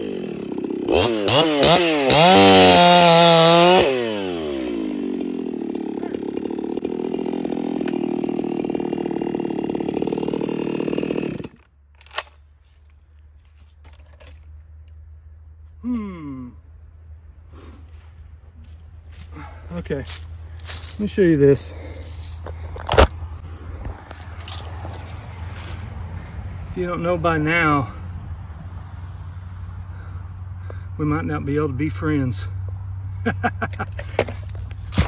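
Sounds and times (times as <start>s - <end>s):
chainsaw engine revving and idling: 0.0s - 11.7s, 17.6s - 28.0s, 28.7s - 35.0s.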